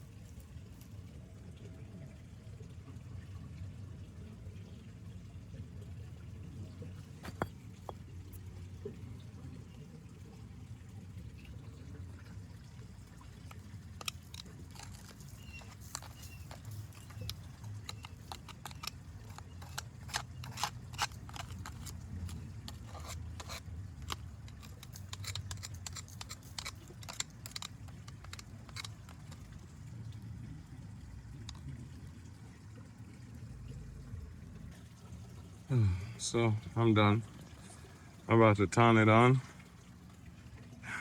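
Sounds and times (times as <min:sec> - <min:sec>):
low steady rumble: 0:00.0 - 0:41.0
hands clicking and scraping: 0:13.5 - 0:29.6.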